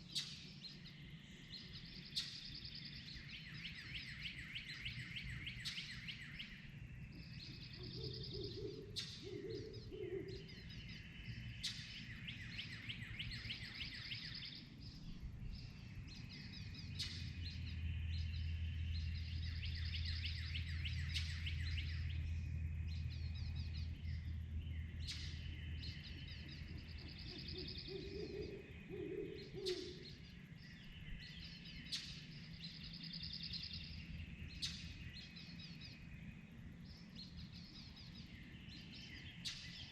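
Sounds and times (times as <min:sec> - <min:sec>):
songbirds trilling: 0:00.0 - 0:39.9
low steady rumble: 0:04.0 - 0:39.9
owl hooting: 0:07.2 - 0:11.0, 0:25.1 - 0:30.2.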